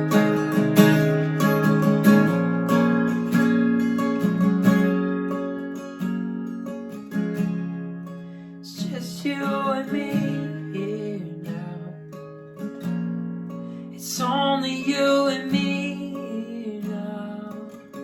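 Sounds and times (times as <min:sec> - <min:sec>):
acoustic guitar strumming: 0:00.0 - 0:18.0
person singing: 0:08.7 - 0:12.0, 0:14.0 - 0:18.0.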